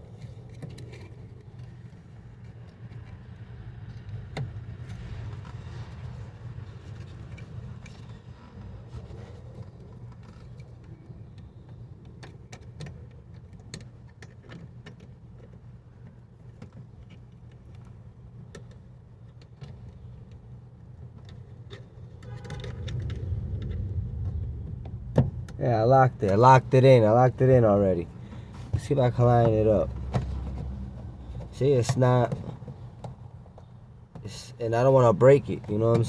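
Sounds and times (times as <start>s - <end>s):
steady low hum: 22.6s - 36.0s.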